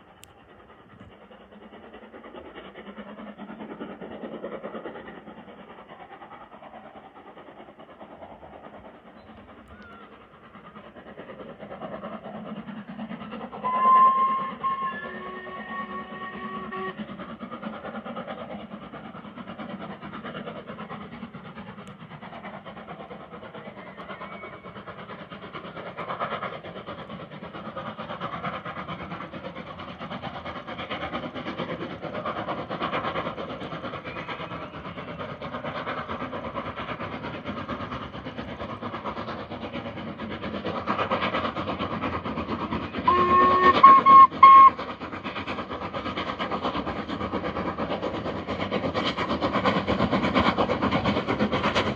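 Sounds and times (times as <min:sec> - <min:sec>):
train rumble: 0:00.0 - 0:51.9
steam locomotive whistle: 0:13.6 - 0:17.1, 0:43.0 - 0:44.9.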